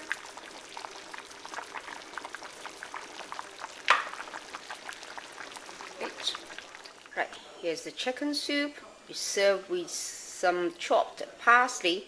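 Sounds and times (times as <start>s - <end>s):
soup bubbling in saucepan: 0.0s - 7.6s.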